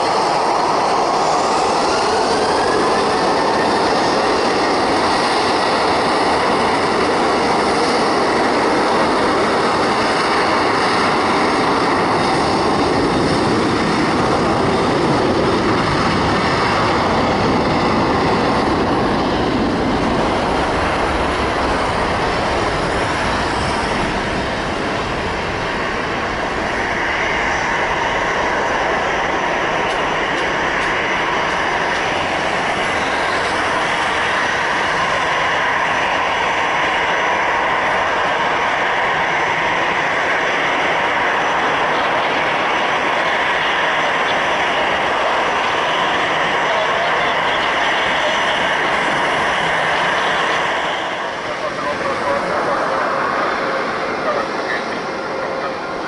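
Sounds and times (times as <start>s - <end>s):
jet engines during takeoff: 0.0s - 56.0s.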